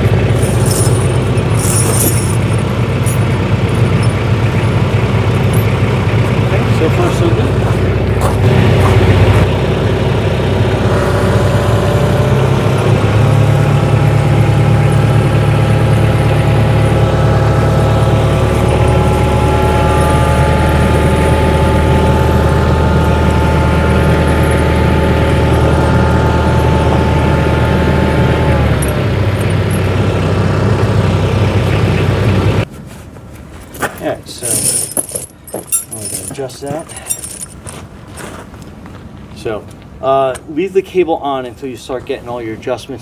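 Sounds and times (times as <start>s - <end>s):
whining tone: 0.0s - 32.6s
tractor engine running: 0.0s - 32.7s.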